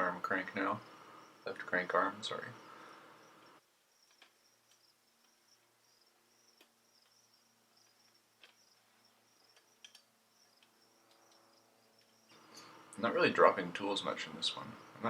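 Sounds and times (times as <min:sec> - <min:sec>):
high-pitched cricket chirping: 0:00.0 - 0:15.0
soft clicks: 0:09.5 - 0:12.7.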